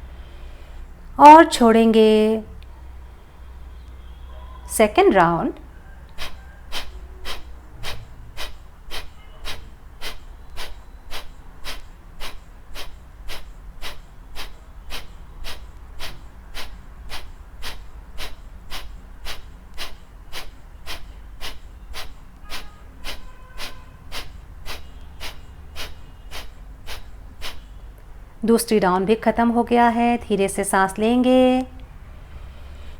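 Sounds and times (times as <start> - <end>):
forceful nasal exhalations: 6.0 - 27.9.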